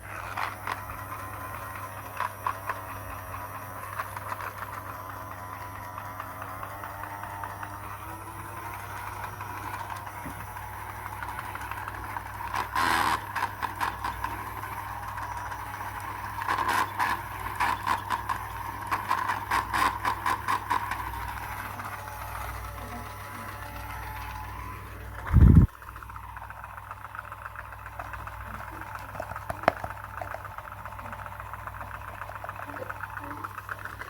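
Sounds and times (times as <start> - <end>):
small motor whirring: 0.0 - 34.0
rapid rattling clicks: 9.2 - 34.0.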